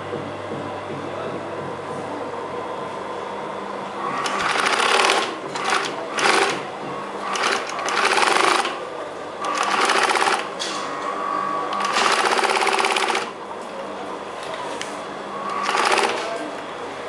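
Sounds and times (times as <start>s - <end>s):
sewing machine motor humming: 4.0s - 8.8s, 9.4s - 10.6s, 11.7s - 13.4s, 15.4s - 16.4s
sewing machine stitching: 4.1s - 6.6s, 7.2s - 8.8s, 9.4s - 10.5s, 11.7s - 13.4s, 15.5s - 16.4s.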